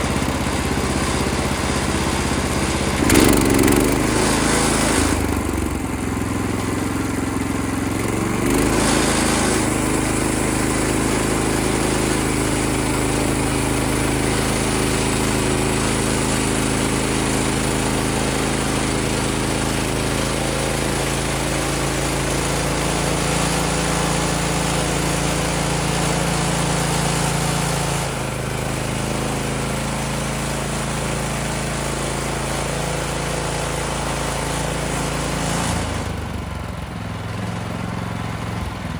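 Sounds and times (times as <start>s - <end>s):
saw blade cutting log: 0.0s - 14.9s
sawmill engine running: 0.0s - 38.9s.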